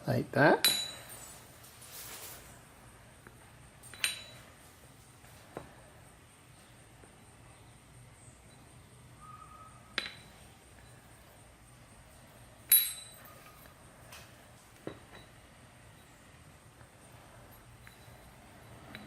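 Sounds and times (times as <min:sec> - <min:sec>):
metal parts clinking: 0:03.8 - 0:04.6, 0:12.5 - 0:16.2, 0:17.4 - 0:19.0.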